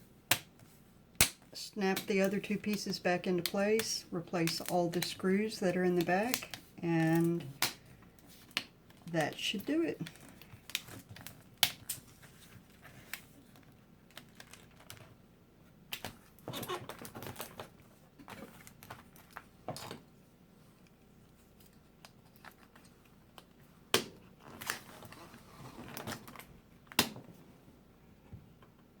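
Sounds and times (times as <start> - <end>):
sharp plastic snaps: 10.0 - 12.0.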